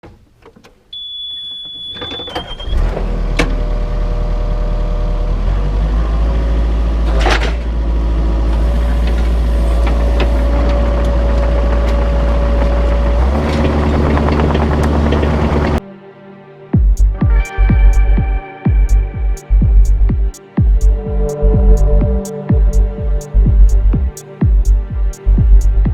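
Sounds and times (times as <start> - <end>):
excavator engine running: 6.1 - 15.8, 16.8 - 25.9.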